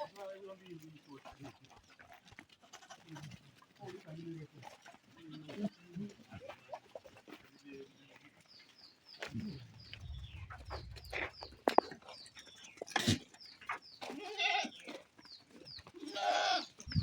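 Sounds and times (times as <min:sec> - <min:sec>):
small birds chirping: 0:00.0 - 0:17.0
goat bleating: 0:02.6 - 0:03.4, 0:14.0 - 0:14.9, 0:15.9 - 0:16.8.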